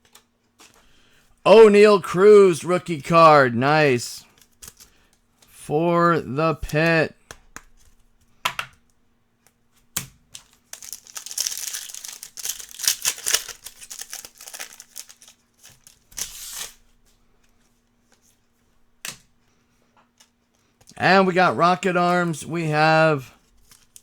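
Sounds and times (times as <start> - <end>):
wrapper crinkling and tearing: 10.4 - 16.8.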